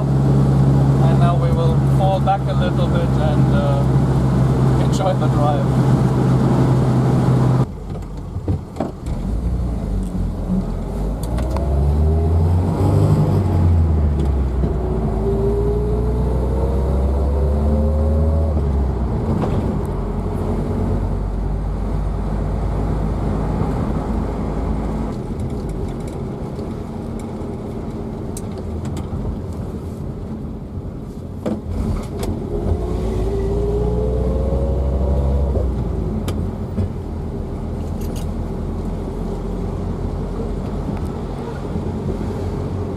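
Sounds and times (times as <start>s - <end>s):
whine rising in pitch: 32.4s - 35.6s.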